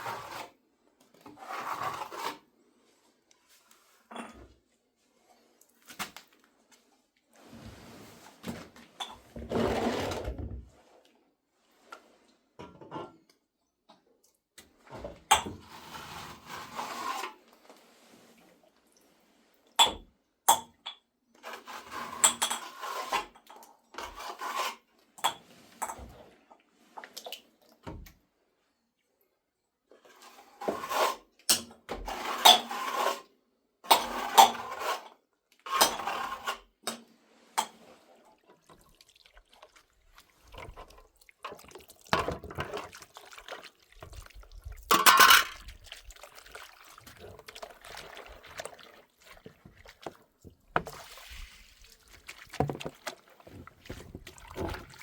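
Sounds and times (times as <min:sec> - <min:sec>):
splashing water: 0:38.2 - 0:55.0
pots and utensils clinking: 0:44.9 - 0:45.8.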